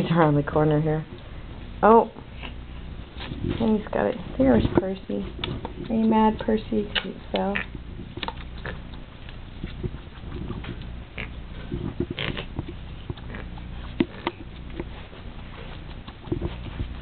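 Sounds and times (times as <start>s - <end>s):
cat snorting through its nose: 7.8s - 17.0s.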